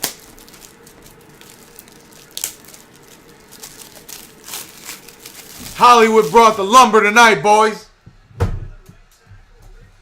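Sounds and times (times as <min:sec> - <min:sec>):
plastic packaging crinkling: 0:00.0 - 0:07.0.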